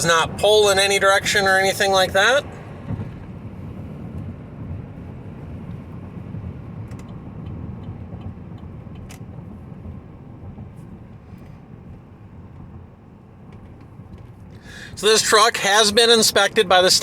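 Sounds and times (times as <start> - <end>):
car road rumble inside cabin: 0.0 - 17.0.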